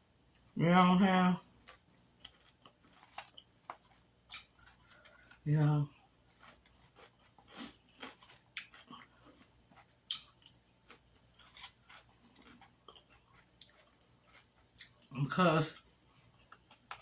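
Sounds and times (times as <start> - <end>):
person chewing with mouth clicks: 6.3 - 15.1.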